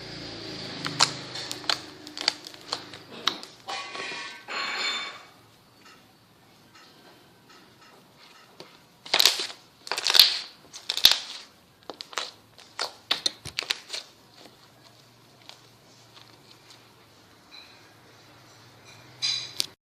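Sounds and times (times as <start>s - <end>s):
slime squishing and popping: 0.8s - 3.7s, 9.1s - 14.1s.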